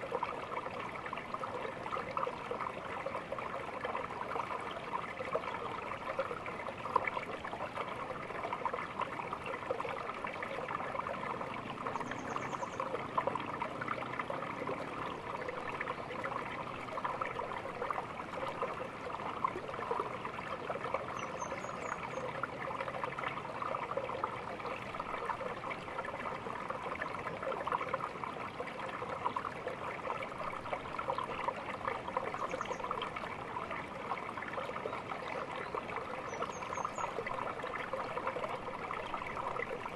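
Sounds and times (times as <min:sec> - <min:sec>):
small stream trickling: 0:00.0 - 0:39.9.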